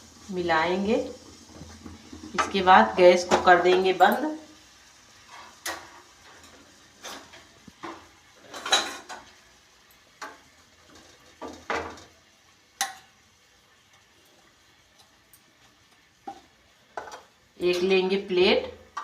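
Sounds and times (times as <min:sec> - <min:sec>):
metal spoon scraping a griddle: 0:05.2 - 0:09.2.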